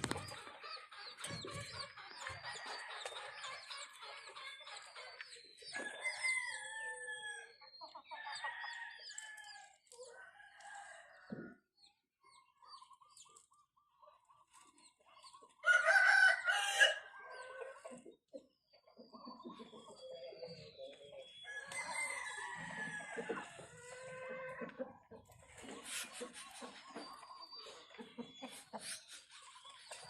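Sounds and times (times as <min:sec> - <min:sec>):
chicks peeping: 0:00.0 - 0:10.2, 0:12.3 - 0:30.0
chickens clucking: 0:00.0 - 0:11.6, 0:12.2 - 0:30.0
rooster crowing: 0:15.6 - 0:17.1, 0:21.5 - 0:23.6.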